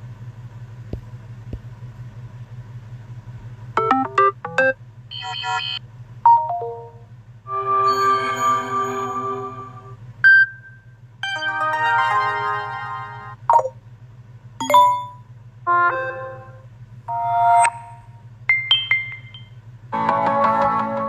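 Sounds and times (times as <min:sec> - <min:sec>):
low steady hum: 0:00.0 - 0:21.0
phone notification chimes: 0:06.3 - 0:07.0, 0:14.6 - 0:15.2, 0:17.1 - 0:19.6.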